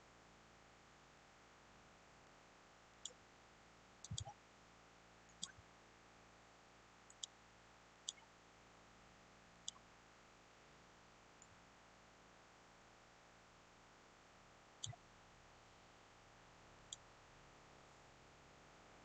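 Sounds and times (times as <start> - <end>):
computer mouse clicking: 4.1 - 4.4.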